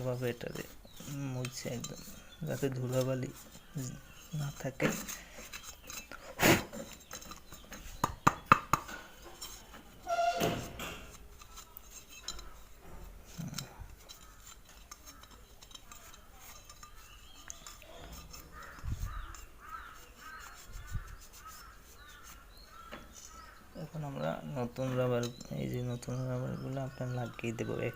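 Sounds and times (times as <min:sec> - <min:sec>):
small birds chirping: 0:00.0 - 0:27.9
faint metal clinks: 0:08.9 - 0:20.4
crow cawing: 0:18.4 - 0:23.7.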